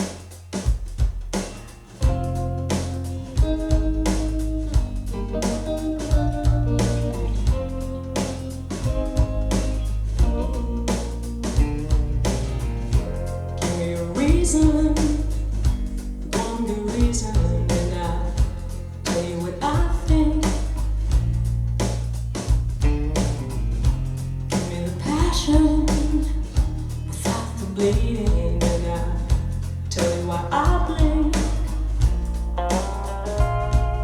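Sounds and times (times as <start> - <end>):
song with vocals and band: 13.0 - 20.9, 24.5 - 34.0.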